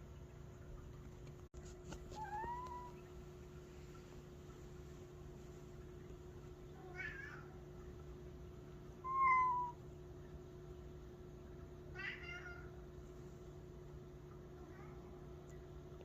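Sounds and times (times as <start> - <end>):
cat meowing: 9.1 - 9.8.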